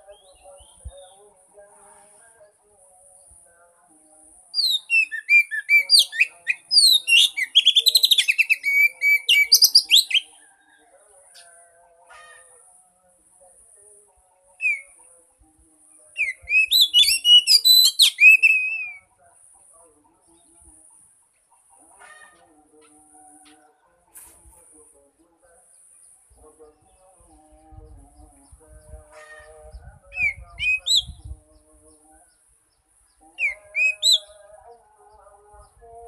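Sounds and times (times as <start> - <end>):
bird song whistles and trills: 0.0 - 1.2, 4.5 - 11.6, 14.6 - 15.0, 16.1 - 19.1, 28.1 - 31.3, 33.1 - 34.4.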